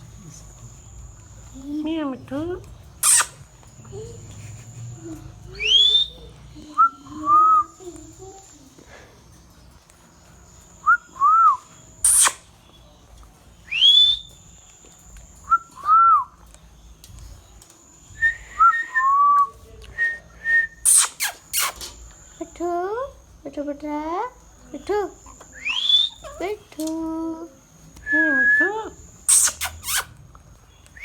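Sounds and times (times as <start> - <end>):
parrot shriek: 3.0 - 3.4, 12.0 - 12.4, 20.8 - 21.9, 29.3 - 30.1
parrot whistling: 3.0 - 3.4, 5.6 - 7.8, 10.8 - 12.4, 13.7 - 14.3, 20.5 - 21.8, 25.6 - 26.4, 28.1 - 30.1.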